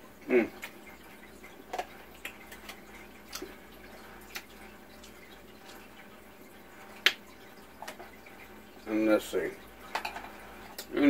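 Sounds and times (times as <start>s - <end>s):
wet eating squelches: 0.2s - 8.9s
faint clicks and smacks: 0.5s - 6.1s, 6.8s - 8.2s.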